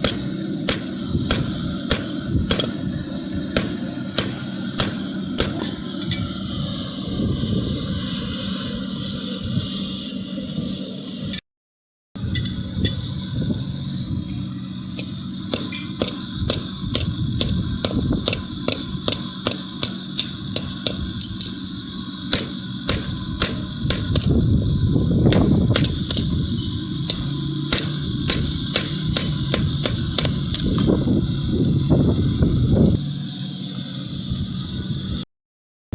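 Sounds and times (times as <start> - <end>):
hammer striking hot steel: 0.0 - 6.3, 14.9 - 24.4, 25.3 - 30.8
low hum and rumble: 0.0 - 11.4, 12.2 - 35.3.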